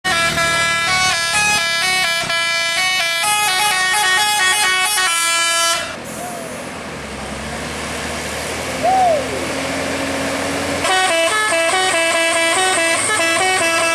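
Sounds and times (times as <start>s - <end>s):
truck horn playing a melody: 0.0s - 6.0s, 10.8s - 13.9s.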